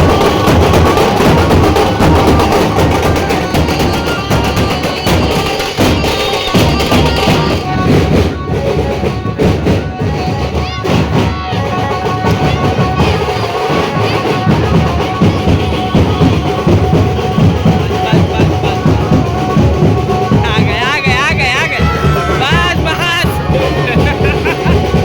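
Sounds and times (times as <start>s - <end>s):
loud music with drum and bass beat: 0.0s - 25.0s.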